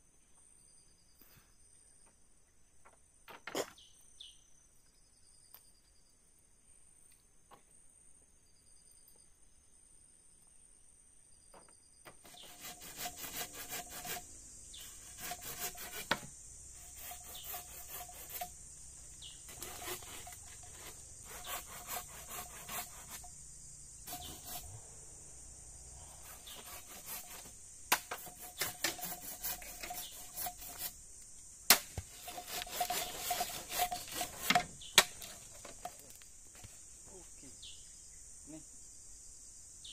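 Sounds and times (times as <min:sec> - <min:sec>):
hand saw cutting wood: 0:12.2 - 0:18.6, 0:19.2 - 0:23.3, 0:24.0 - 0:24.8, 0:26.1 - 0:31.0, 0:31.7 - 0:35.8.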